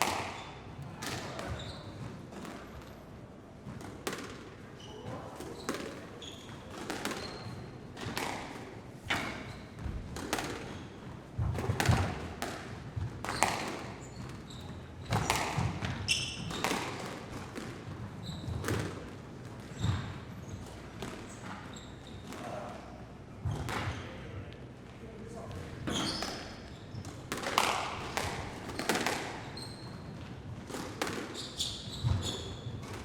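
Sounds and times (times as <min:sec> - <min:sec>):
balls bouncing on hard floor: 0:00.0 - 0:03.0, 0:03.6 - 0:22.6, 0:23.4 - 0:24.1, 0:25.4 - 0:33.0
shoe squeaks: 0:00.3 - 0:02.1, 0:04.8 - 0:07.8, 0:09.3 - 0:09.8, 0:13.3 - 0:15.3, 0:16.0 - 0:16.9, 0:18.1 - 0:18.7, 0:19.7 - 0:22.7, 0:25.8 - 0:27.1, 0:28.7 - 0:30.2, 0:31.2 - 0:33.0.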